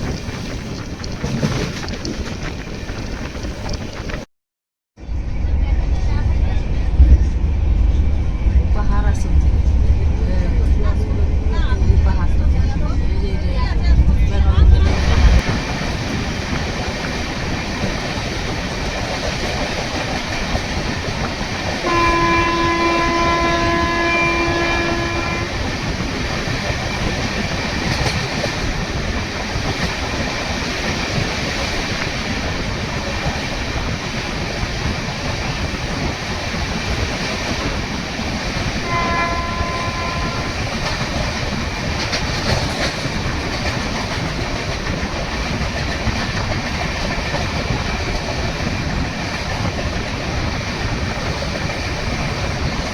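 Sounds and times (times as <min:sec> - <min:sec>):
train rumble and clatter on rails: 0:00.0 - 0:04.3, 0:05.0 - 0:52.9
locomotive horn: 0:21.8 - 0:25.6, 0:38.8 - 0:40.8.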